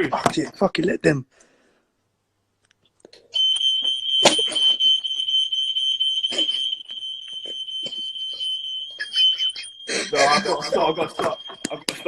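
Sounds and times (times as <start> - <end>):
smoke alarm tone: 3.3 - 12.0.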